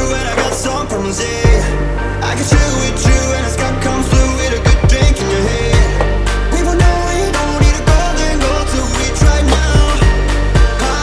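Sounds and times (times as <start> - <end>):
pop song with singing: 0.0 - 11.0
kick drum beat: 1.5 - 1.7, 2.5 - 3.3, 4.2 - 5.2, 6.8 - 8.1, 9.2 - 10.9.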